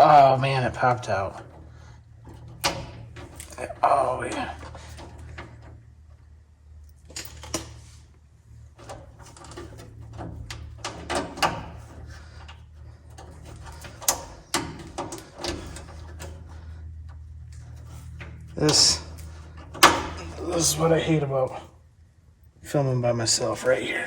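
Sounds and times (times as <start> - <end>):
hand tools clicking and clanking: 0.0 - 6.2, 8.7 - 21.6
steady low hum: 0.0 - 24.0.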